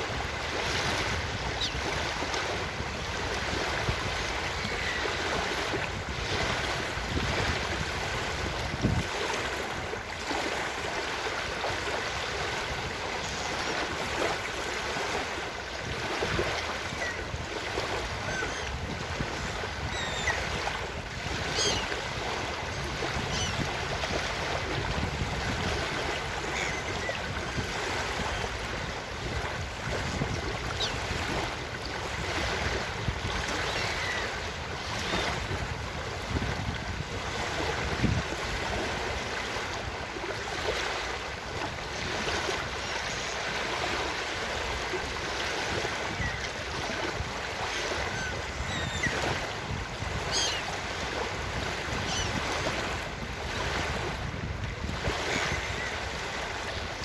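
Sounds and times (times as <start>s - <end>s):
ocean surf on beach: 0.0s - 57.0s
faint seagull calls: 1.5s - 1.8s, 4.6s - 5.3s, 18.2s - 18.8s, 19.8s - 20.6s, 21.4s - 22.0s, 22.7s - 23.7s, 26.4s - 27.2s, 33.5s - 34.4s, 46.1s - 46.6s, 47.7s - 49.4s, 50.2s - 50.8s, 52.0s - 52.5s.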